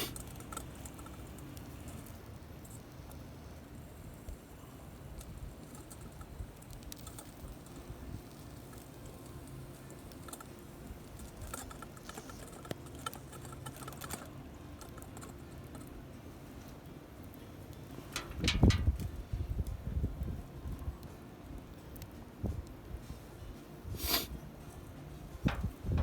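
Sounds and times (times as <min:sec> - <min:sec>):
fire pops and ticks: 0:00.0 - 0:16.0, 0:16.6 - 0:22.8, 0:25.4 - 0:26.0
campfire crackling: 0:00.0 - 0:26.0.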